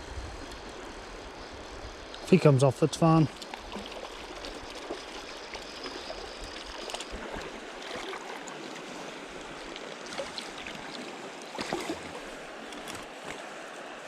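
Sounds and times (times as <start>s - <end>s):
creek water running over rocks: 0.0s - 14.0s.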